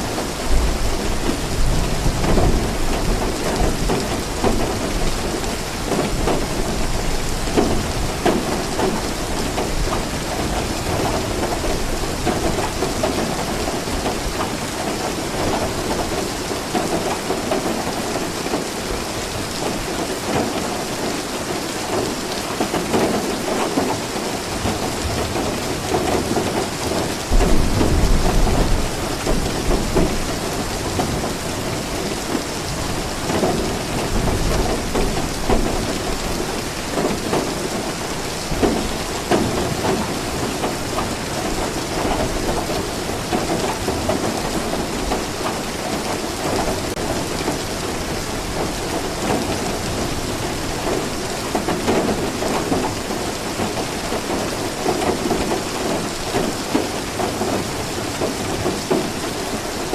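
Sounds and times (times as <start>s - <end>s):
rain falling: 0.0s - 59.9s
thunder rumble: 27.2s - 31.4s.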